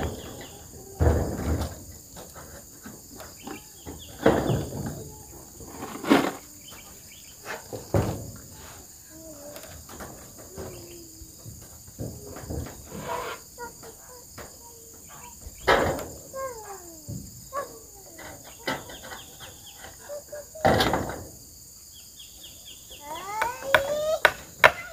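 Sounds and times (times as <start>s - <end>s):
crickets and insects chorus: 0.0s - 24.9s
loud knocks: 3.4s - 5.4s.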